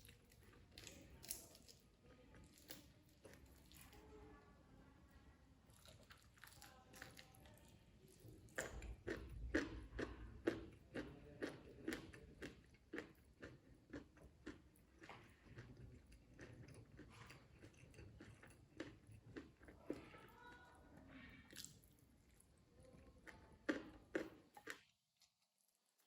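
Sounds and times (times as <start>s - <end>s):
crisp crunchy chewing: 8.4s - 20.0s.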